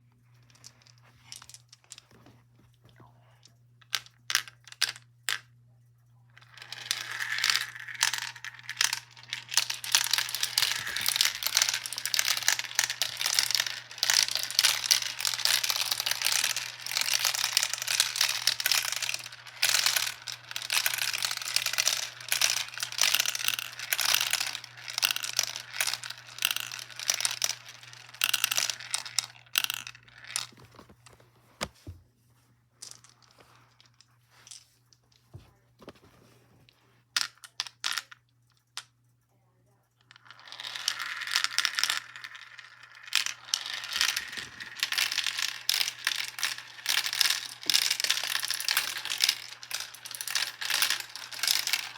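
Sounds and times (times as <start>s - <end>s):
marbles clattering in a marble run: 6.4s - 30.9s, 40.1s - 51.9s.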